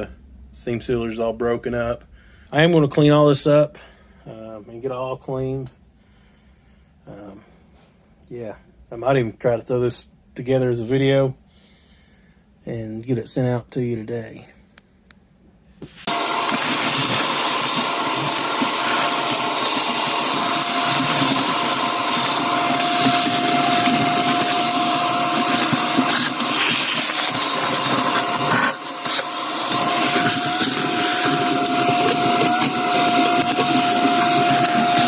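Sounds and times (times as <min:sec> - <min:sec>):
shop vacuum running: 0:15.8 - 0:35.0.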